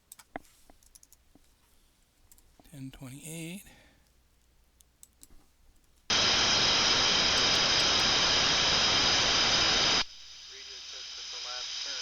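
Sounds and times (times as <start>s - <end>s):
faint clicks: 0.0s - 1.6s
radio static hiss: 6.1s - 12.0s.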